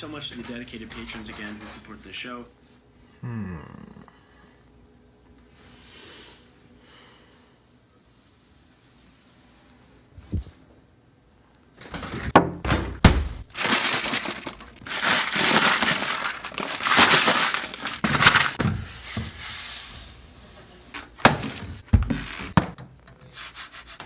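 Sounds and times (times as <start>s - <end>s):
glass fragments clinking: 13.5s - 18.6s
glass smashing and shattering: 13.5s - 18.6s.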